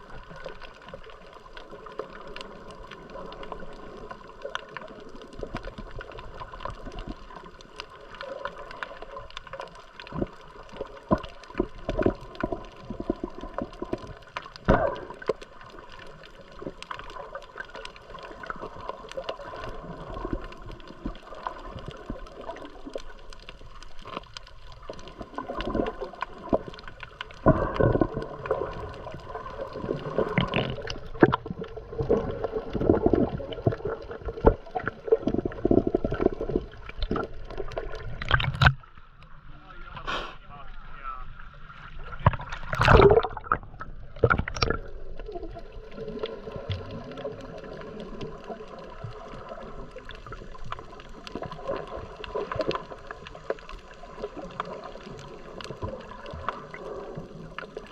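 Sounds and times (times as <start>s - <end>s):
water sloshing and gurgling: 0.0s - 40.0s, 40.6s - 57.9s
splashes and knocks: 30.0s - 38.8s, 42.1s - 44.9s.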